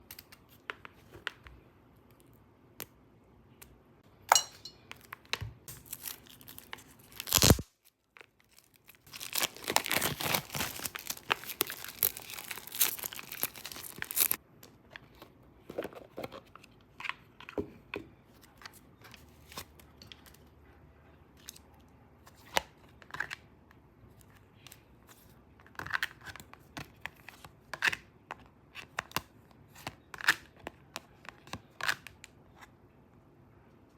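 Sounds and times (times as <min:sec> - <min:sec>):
wrapping tearing and crinkling: 0:05.7 - 0:14.4.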